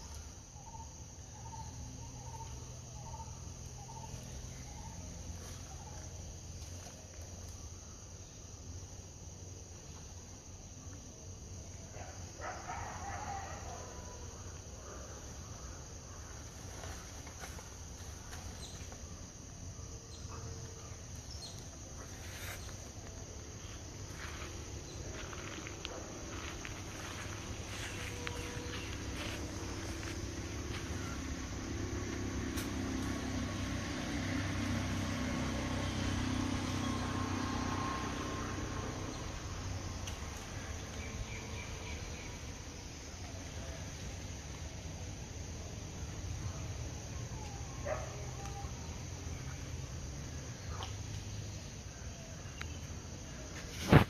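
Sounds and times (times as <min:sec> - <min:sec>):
vehicle engine hum: 0:00.6 - 0:07.8, 0:20.2 - 0:51.9
steady high buzz: 0:17.5 - 0:34.6.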